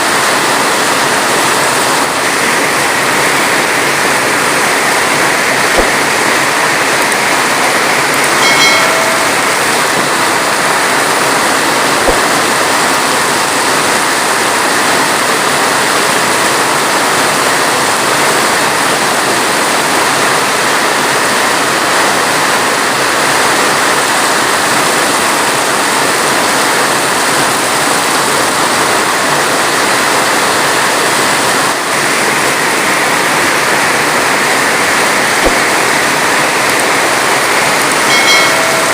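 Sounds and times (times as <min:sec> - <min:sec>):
heavy rain hiss: 0:00.0 - 0:38.9
faint pitched tone: 0:08.1 - 0:12.6, 0:37.9 - 0:38.9.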